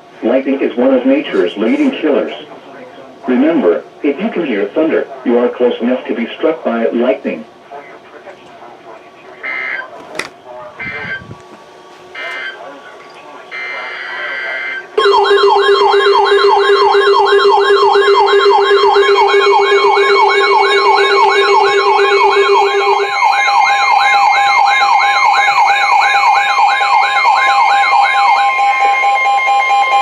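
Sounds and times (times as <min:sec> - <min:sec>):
electronic alert siren sweeping: 0:10.8 - 0:11.3, 0:13.5 - 0:30.0
steady low tone: 0:15.0 - 0:23.4.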